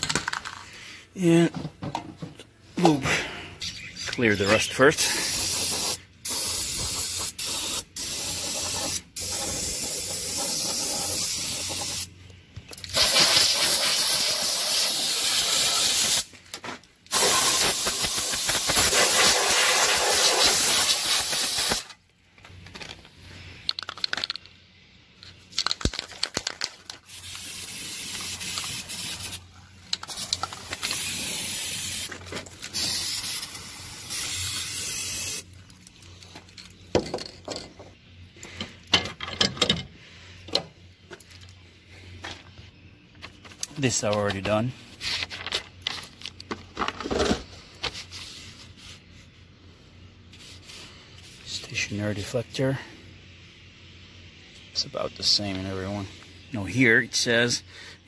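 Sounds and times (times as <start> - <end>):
aerosol spray hissing: 5.0 - 12.1, 13.0 - 16.3, 17.1 - 21.8, 27.1 - 29.4, 30.1 - 32.1, 32.7 - 35.5
small handling clicks: 22.4 - 24.6.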